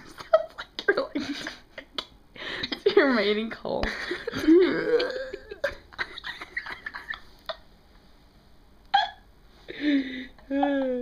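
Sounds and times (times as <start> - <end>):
breathy giggling: 3.9 - 7.6.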